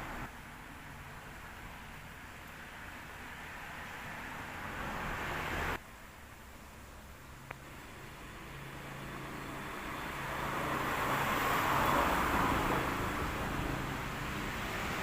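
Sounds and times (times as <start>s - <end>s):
vehicle passing: 2.7s - 5.8s, 7.7s - 15.0s.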